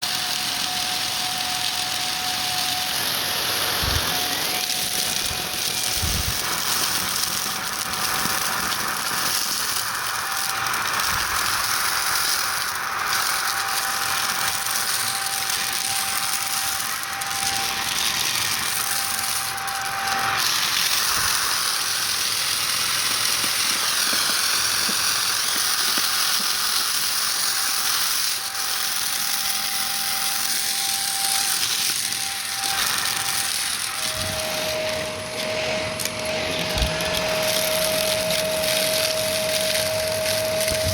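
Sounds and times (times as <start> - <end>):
vacuum cleaner motor whine: 0.0 - 40.9
debris rattling through vacuum: 0.2 - 40.9.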